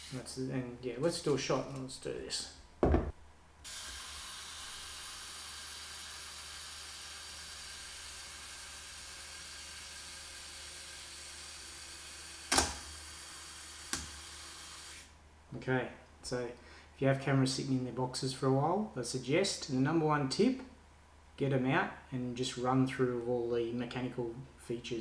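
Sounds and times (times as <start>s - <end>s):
steady hiss: 0.0s - 2.6s.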